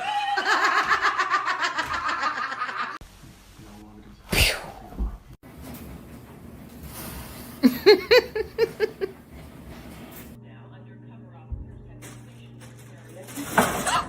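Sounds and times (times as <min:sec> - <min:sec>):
bursts of laughter: 0:00.0 - 0:03.0, 0:07.6 - 0:09.2
short sneeze: 0:04.3 - 0:04.8.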